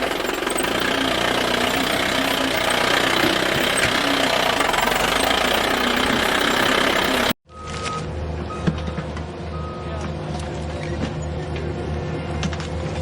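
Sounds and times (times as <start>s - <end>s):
engine idling with knock: 0.0s - 7.4s
steady beeping tone: 0.0s - 7.4s.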